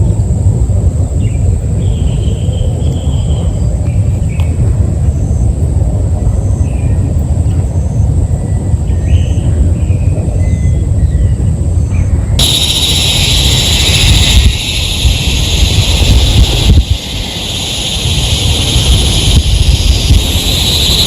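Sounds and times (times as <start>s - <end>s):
heavy rain: 12.4s - 21.0s.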